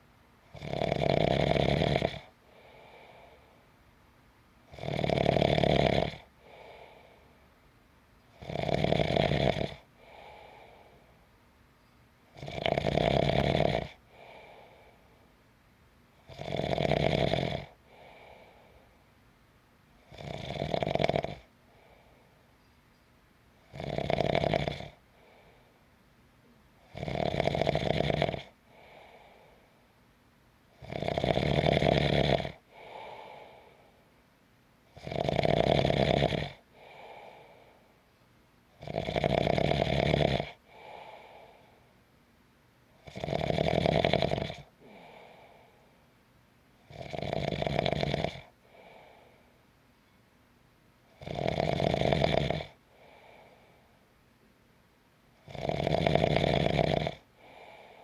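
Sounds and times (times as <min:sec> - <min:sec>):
person snoring: 0:00.6 - 0:03.4, 0:04.7 - 0:07.1, 0:08.4 - 0:10.9, 0:12.4 - 0:15.0, 0:16.3 - 0:18.8, 0:20.1 - 0:21.5, 0:23.7 - 0:25.5, 0:26.9 - 0:29.5, 0:30.8 - 0:33.8, 0:35.0 - 0:37.7, 0:38.8 - 0:41.7, 0:43.0 - 0:45.7, 0:46.9 - 0:49.3, 0:51.2 - 0:53.7, 0:55.5 - 0:58.0
soft breath: 0:02.4 - 0:03.8, 0:06.3 - 0:07.6, 0:09.8 - 0:12.1, 0:14.0 - 0:15.4, 0:17.7 - 0:19.2, 0:21.5 - 0:23.2, 0:24.9 - 0:26.6, 0:28.6 - 0:30.0, 0:32.6 - 0:34.2, 0:36.6 - 0:38.4, 0:40.6 - 0:42.0, 0:44.7 - 0:46.2, 0:48.4 - 0:49.7, 0:52.8 - 0:54.2, 0:57.3 - 0:58.0.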